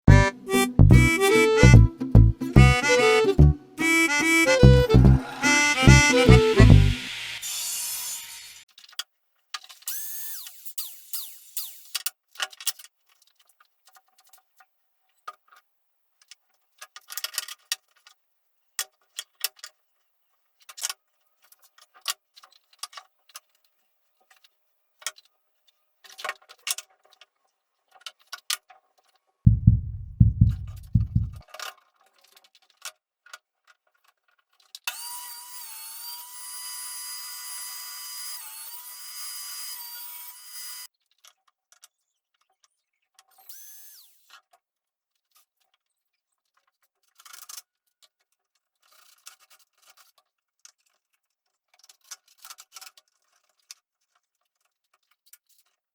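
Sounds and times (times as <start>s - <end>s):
power tool motor whining: 5.2s - 8.6s, 9.9s - 12.0s
loud low thumps: 29.5s - 31.4s.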